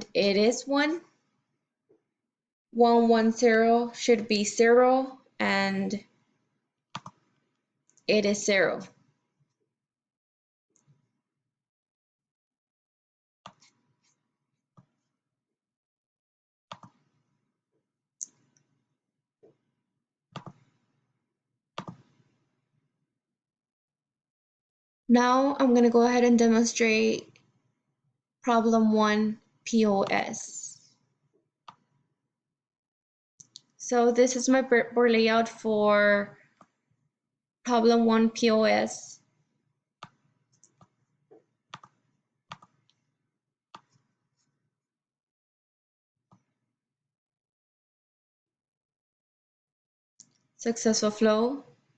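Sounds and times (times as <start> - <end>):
computer mouse clicking: 7.0 - 7.2, 13.5 - 13.8, 16.7 - 17.0, 20.4 - 20.7, 21.8 - 22.2, 41.7 - 42.9.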